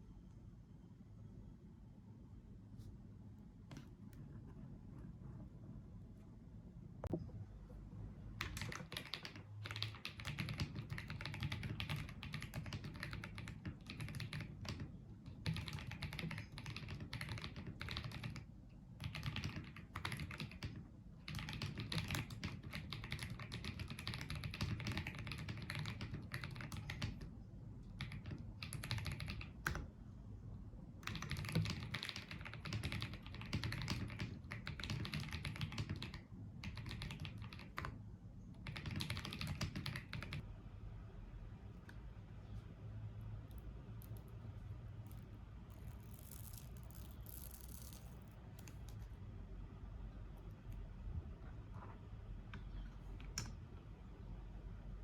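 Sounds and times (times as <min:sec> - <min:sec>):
mechanical keyboard typing: 0:08.4 - 0:27.3, 0:28.0 - 0:29.9, 0:31.0 - 0:38.0, 0:38.6 - 0:40.4.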